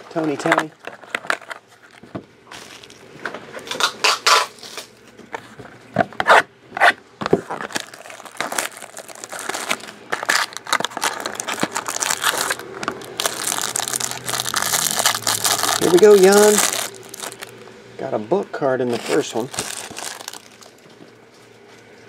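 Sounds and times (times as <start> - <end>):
scraping and rustling handling: 0.1 - 3.8, 4.5 - 17.6, 18.8 - 22.0
plastic wrapping tearing and crinkling: 0.2 - 4.9, 7.3 - 17.6, 18.9 - 20.9.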